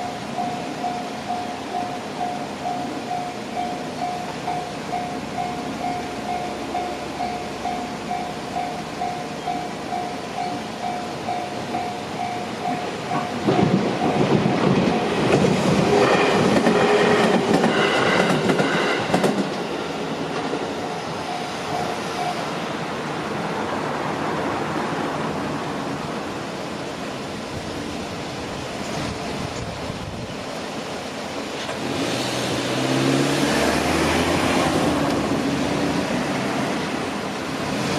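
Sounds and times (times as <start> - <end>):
level crossing warning bell ringing: 0.0 - 15.4, 20.7 - 22.8
train passing over crossing: 0.0 - 37.9.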